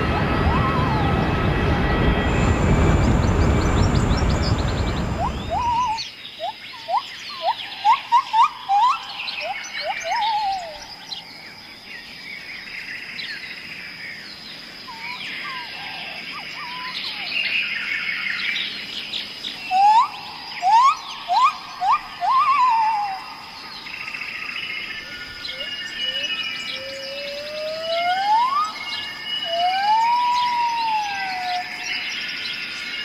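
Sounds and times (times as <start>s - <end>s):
steady high thin tone: 0.0s - 6.0s
songbirds chirping and singing: 0.0s - 33.0s.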